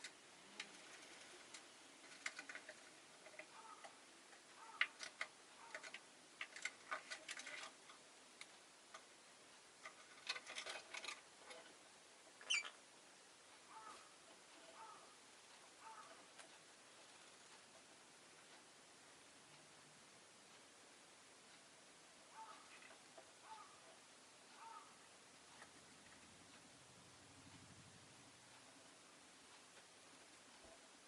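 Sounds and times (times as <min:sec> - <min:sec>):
bird clicks and scratchy ticks: 0:00.0 - 0:09.1, 0:09.8 - 0:11.8, 0:13.6 - 0:18.6, 0:22.2 - 0:24.0.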